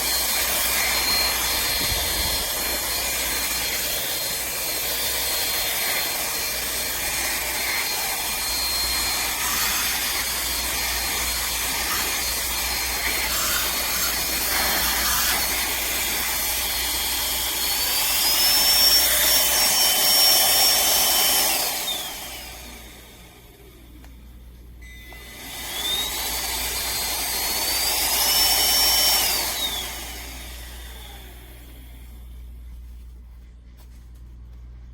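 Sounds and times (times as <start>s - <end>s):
handheld vacuum motor whining: 0.0s - 24.0s, 24.8s - 32.2s.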